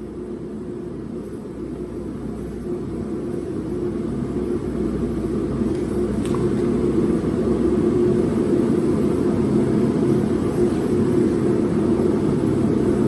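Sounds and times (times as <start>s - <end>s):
faint steady hum: 0.0s - 13.0s
low mechanical rumble: 0.0s - 13.0s.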